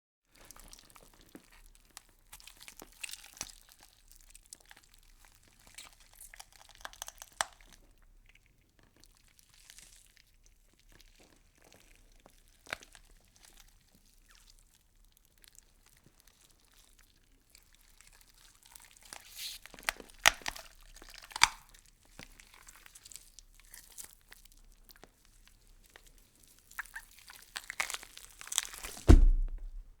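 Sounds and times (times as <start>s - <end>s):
wet meat crackling and clicking: 0.4s - 29.8s
loud low thump: 29.0s - 30.0s.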